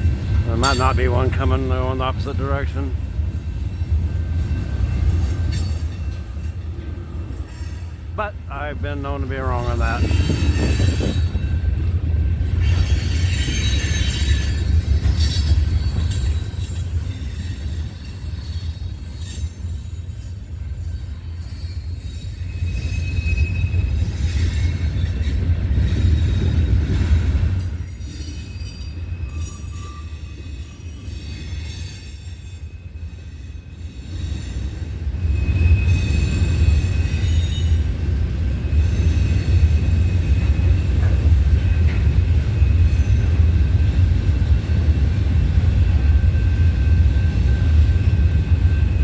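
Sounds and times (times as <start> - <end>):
train rumbling past: 0.0 - 49.0
high wheel squeals: 9.3 - 11.8, 12.4 - 37.9.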